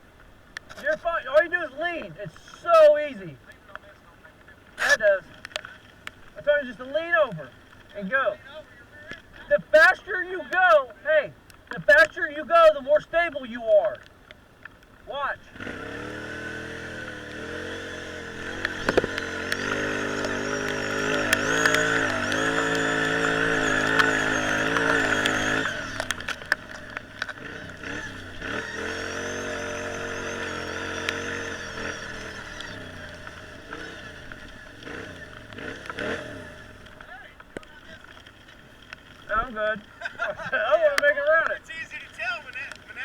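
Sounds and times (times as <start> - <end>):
off-road vehicle engine running hard: 15.4 - 39.3.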